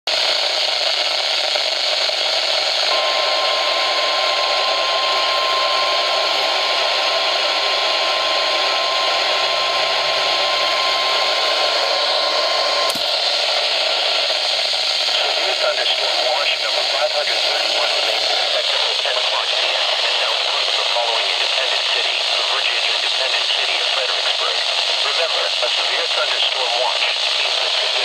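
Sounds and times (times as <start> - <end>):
steady alarm tone: 0.1 - 21.2
radio static hiss: 0.1 - 28.0.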